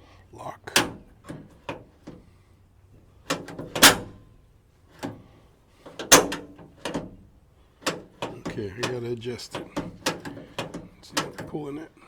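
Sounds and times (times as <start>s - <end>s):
door latch clicking: 3.3s - 4.2s, 6.0s - 7.1s
loud door clunks: 3.3s - 4.3s, 6.0s - 7.2s.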